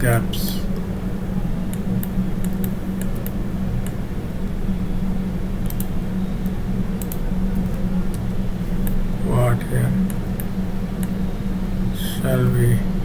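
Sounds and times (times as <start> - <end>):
mouse and keyboard clicks: 5.7 - 5.9.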